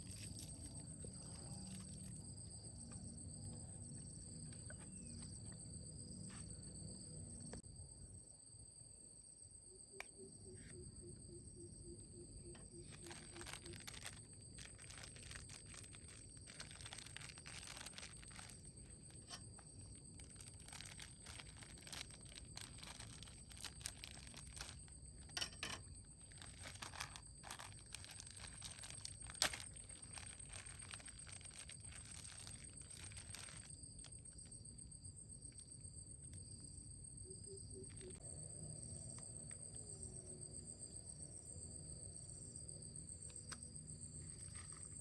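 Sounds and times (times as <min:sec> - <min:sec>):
crickets trilling: 0:00.0 - 0:45.0
handling clicks and rustles: 0:12.8 - 0:33.7.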